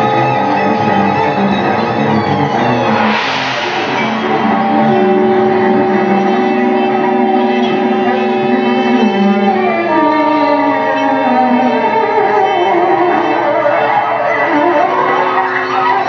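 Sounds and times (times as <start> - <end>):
string trio bowed notes: 0.0 - 16.0
harsh noisy attack: 2.5 - 6.2.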